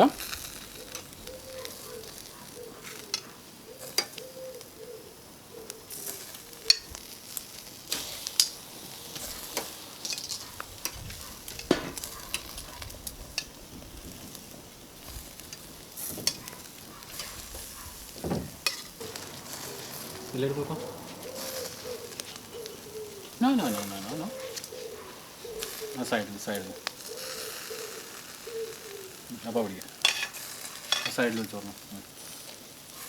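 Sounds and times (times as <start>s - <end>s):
food sizzling on grill: 0.0s - 33.0s
food knocking on metal grill: 11.5s - 12.6s, 18.1s - 18.9s.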